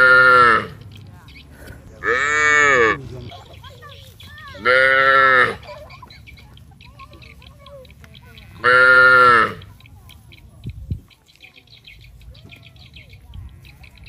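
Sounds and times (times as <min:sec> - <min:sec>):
cattle mooing: 0:00.0 - 0:00.8, 0:02.0 - 0:03.5, 0:04.5 - 0:05.8, 0:08.4 - 0:09.7.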